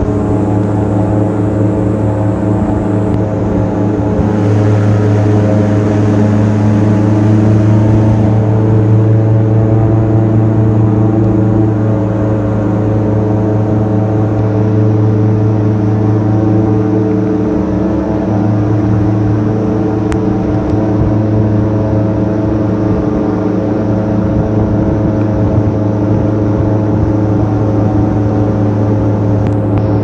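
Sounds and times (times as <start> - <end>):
airboat engine drone: 0.0 - 30.0.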